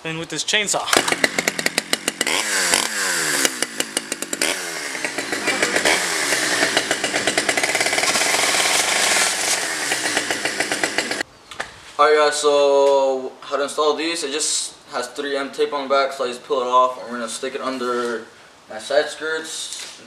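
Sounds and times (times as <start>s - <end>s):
chainsaw running: 0.9s - 11.2s.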